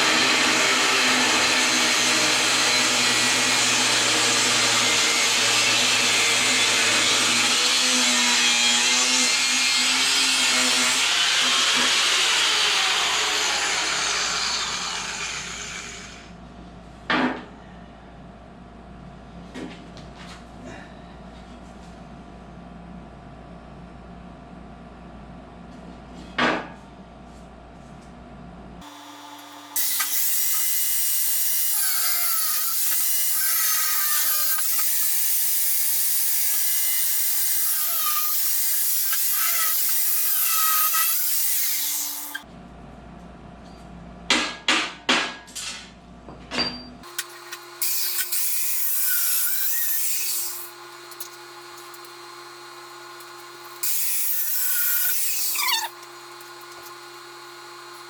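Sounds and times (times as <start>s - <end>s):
power tool grinding steel: 0.0s - 16.3s, 28.8s - 42.4s, 47.0s - 58.0s.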